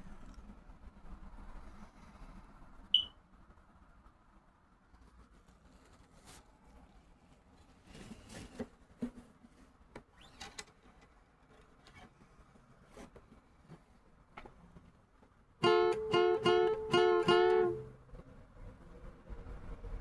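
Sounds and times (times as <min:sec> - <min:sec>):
guitar chord strumming: 0:15.6 - 0:18.0.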